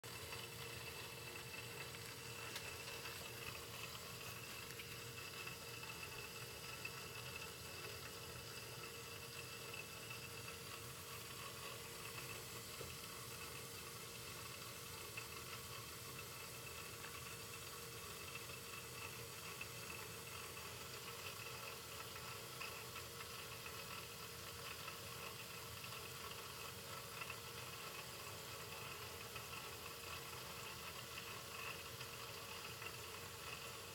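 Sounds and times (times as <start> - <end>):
circulator pump hissing: 0.0 - 33.9
thin steady tone: 0.0 - 33.9.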